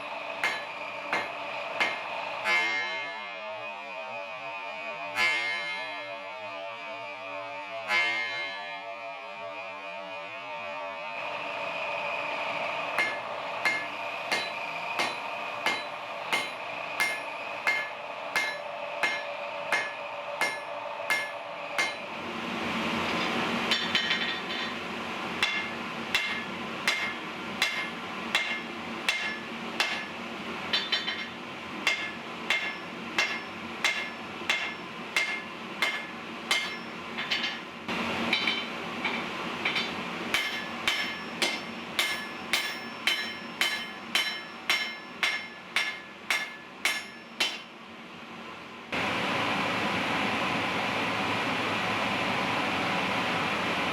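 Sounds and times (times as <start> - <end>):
hammer blows on hot steel: 0.4 - 3.3, 13.0 - 22.2, 25.4 - 47.7.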